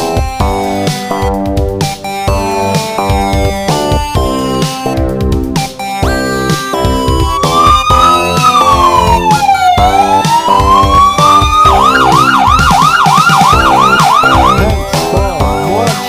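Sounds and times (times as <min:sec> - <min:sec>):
background music with steady beat: 0:00.0 - 0:16.0
ambulance siren: 0:05.7 - 0:15.6.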